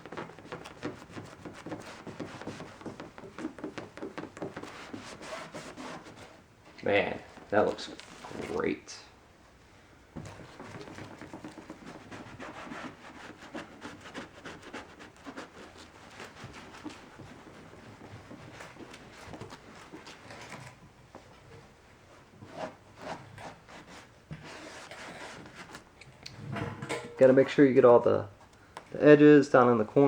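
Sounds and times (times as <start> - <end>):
cloth rubbing plastic lens: 0.0 - 6.4, 7.1 - 8.7, 10.2 - 20.6
handling sounds: 10.2 - 21.6.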